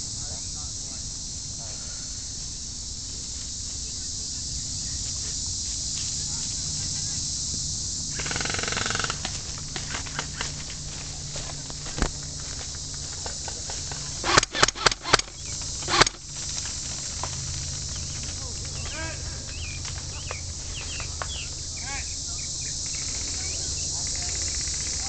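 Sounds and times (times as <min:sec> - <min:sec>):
insect drone: 0:00.0 - 0:25.0
airsoft rifle shots: 0:14.2 - 0:16.2.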